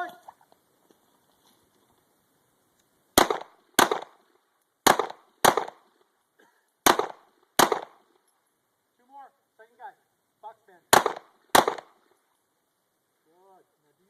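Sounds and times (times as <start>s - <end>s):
handgun shots: 3.2s - 4.2s, 4.9s - 5.8s, 6.8s - 8.0s, 10.9s - 12.0s.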